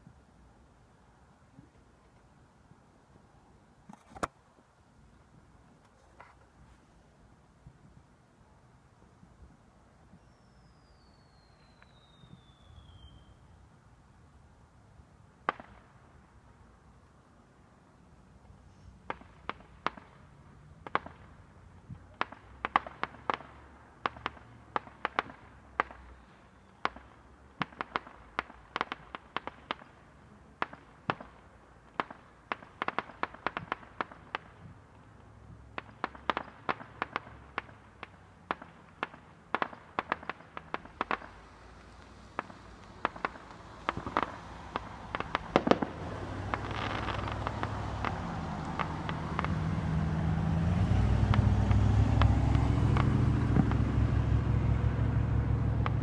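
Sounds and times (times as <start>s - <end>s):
firecrackers banging: 35.8s - 50.1s, 50.7s - 55.2s.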